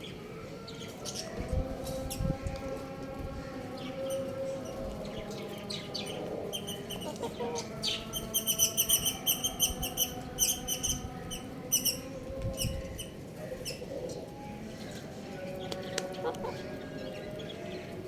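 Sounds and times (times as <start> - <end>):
chick peeping: 6.0 - 13.9, 14.6 - 17.6.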